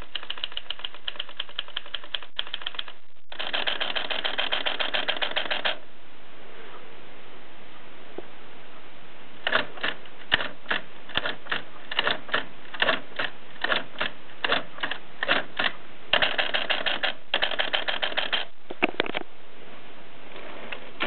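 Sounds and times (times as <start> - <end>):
typewriter keys clacking: 0.0 - 5.8, 9.4 - 18.5.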